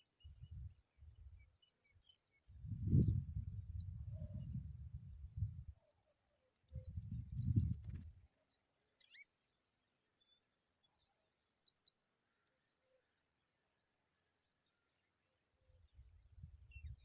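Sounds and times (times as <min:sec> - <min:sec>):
skylark chirps: 0:06.7 - 0:08.0.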